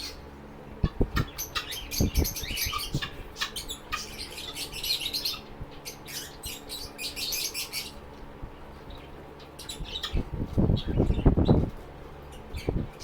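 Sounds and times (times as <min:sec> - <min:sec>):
birds chirping rapidly: 0:00.0 - 0:13.0.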